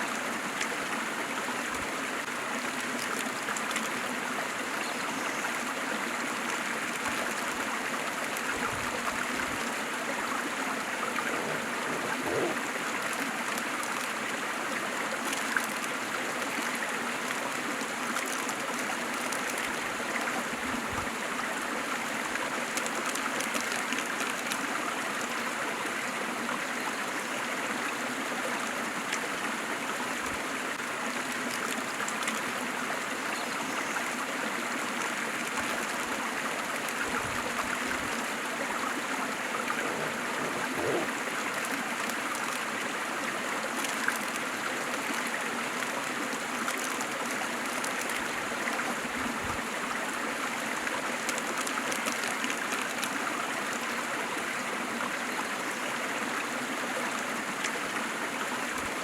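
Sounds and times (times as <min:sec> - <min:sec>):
water rushing and splashing: 0:00.0 - 0:59.0
water gurgling: 0:05.6 - 0:26.8, 0:34.0 - 0:55.2.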